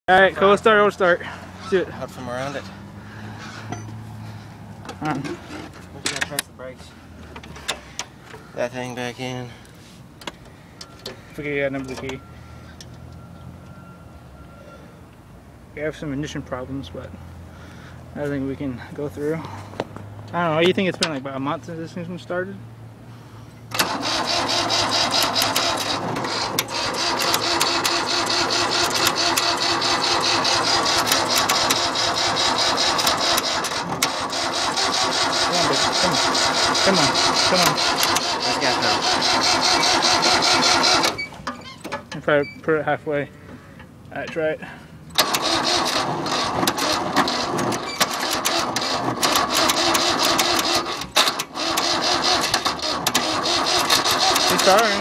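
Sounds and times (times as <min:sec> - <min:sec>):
tractor engine cranking: 0:04.8 - 0:06.5, 0:07.2 - 0:08.6, 0:23.6 - 0:42.7, 0:43.8 - 0:55.0.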